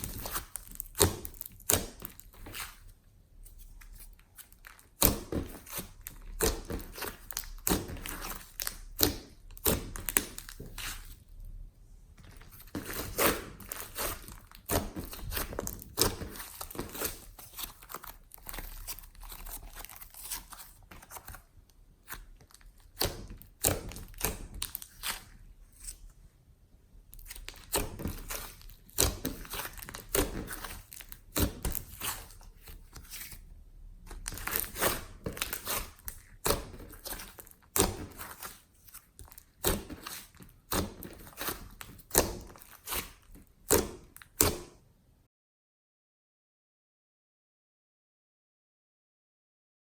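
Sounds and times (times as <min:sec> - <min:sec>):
sticky slime popping and crackling: 0:00.0 - 0:02.9, 0:04.4 - 0:11.2, 0:12.3 - 0:21.2, 0:22.0 - 0:25.3, 0:27.1 - 0:33.4, 0:34.0 - 0:44.7.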